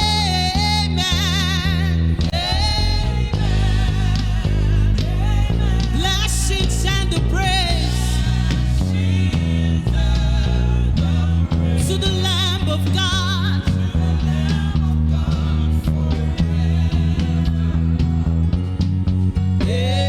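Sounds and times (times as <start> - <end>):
bass guitar: 0.0 - 20.0
worship band music: 0.0 - 20.0.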